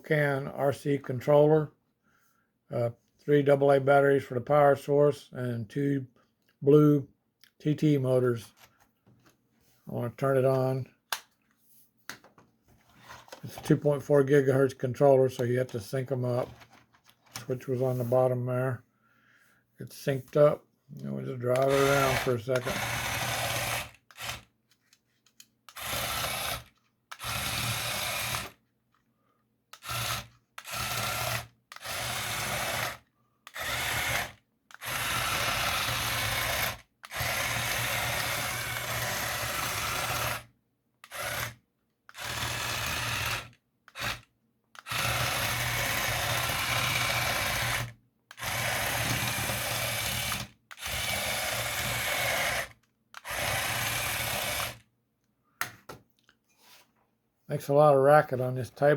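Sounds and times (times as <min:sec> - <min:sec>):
small gear motors whining: 0:21.6 - 0:24.4, 0:25.7 - 0:28.6, 0:29.8 - 0:41.6, 0:42.2 - 0:54.8.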